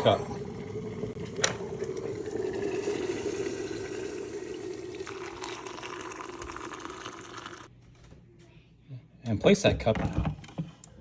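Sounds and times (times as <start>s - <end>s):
hot water pouring into cup: 0.0s - 7.7s.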